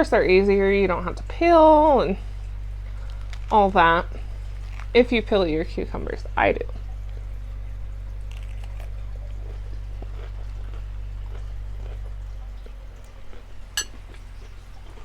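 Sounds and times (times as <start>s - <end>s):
chewing crunchy salad: 2.8s - 5.0s, 7.0s - 15.0s.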